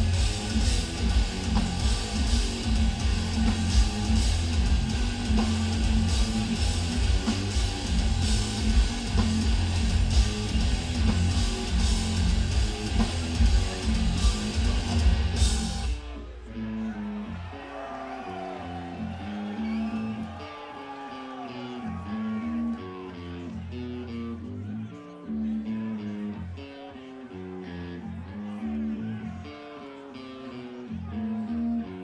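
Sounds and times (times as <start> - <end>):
drums and cymbals: 0.0 - 16.2
distorted guitars and bass: 0.0 - 32.0.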